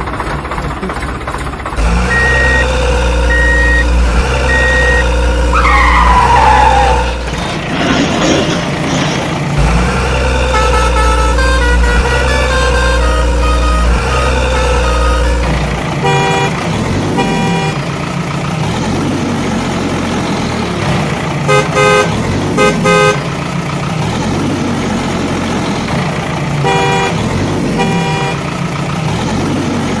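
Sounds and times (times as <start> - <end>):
engine running: 0.0 - 30.0
truck horn honking: 1.8 - 7.4, 9.6 - 18.3, 21.4 - 23.5, 26.5 - 28.7.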